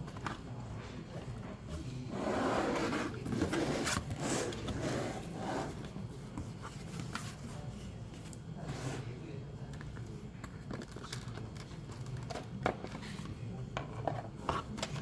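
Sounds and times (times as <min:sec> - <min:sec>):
cardboard rubbing and scraping: 0:02.1 - 0:05.8.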